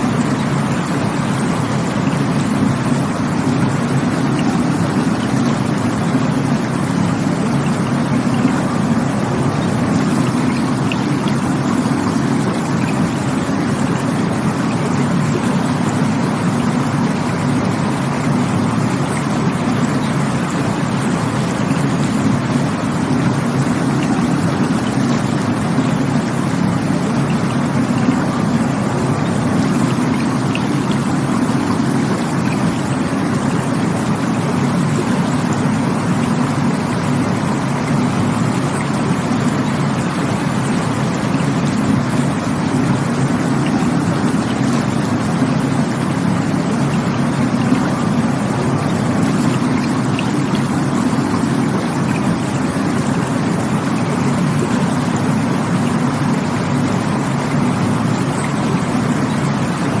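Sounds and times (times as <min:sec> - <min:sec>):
rushing water: 0:00.0 - 1:00.0.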